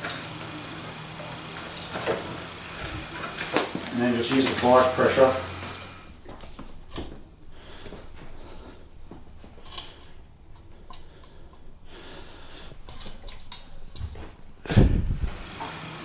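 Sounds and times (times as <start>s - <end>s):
heavy breathing: 7.4s - 13.2s.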